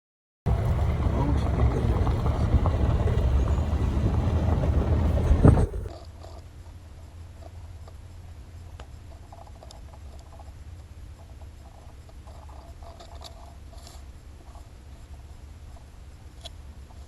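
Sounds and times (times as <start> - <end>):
wind rumble on microphone: 0.5 - 5.9.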